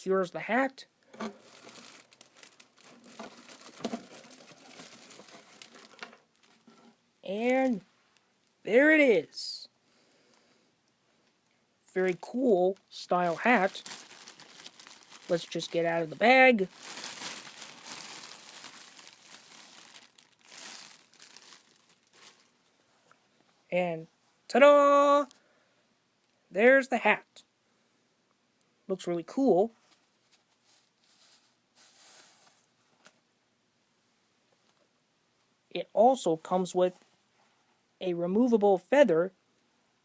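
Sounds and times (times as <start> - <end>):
cardboard and packing crinkling: 1.2 - 7.8, 12.7 - 22.6
bag rustling: 1.3 - 6.8, 13.4 - 22.5.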